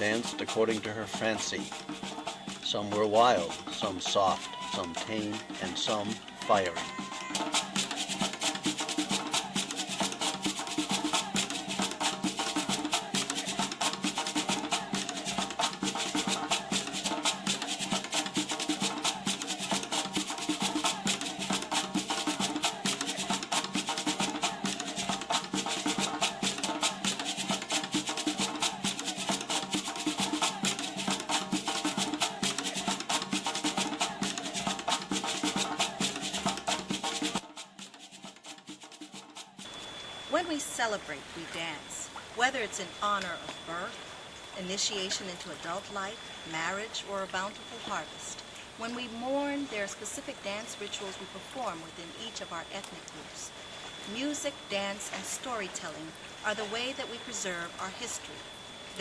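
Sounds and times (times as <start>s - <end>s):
shaker: 0.0s - 43.9s, 44.9s - 59.0s
drums: 0.0s - 44.6s.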